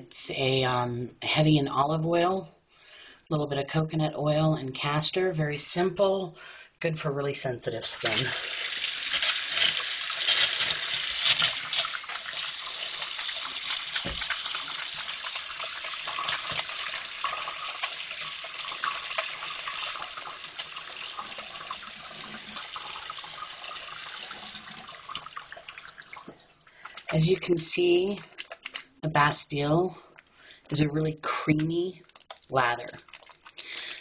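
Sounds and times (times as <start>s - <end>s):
water running from a tap: 7.9s - 26.3s
hands lathering soap: 8.0s - 29.0s, 32.0s - 34.0s.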